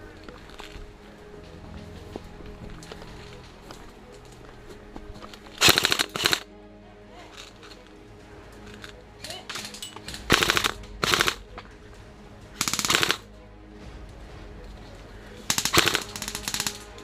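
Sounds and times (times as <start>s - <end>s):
airsoft guns firing full-auto: 5.6s - 6.4s, 10.2s - 11.4s, 12.6s - 13.2s, 15.5s - 16.8s.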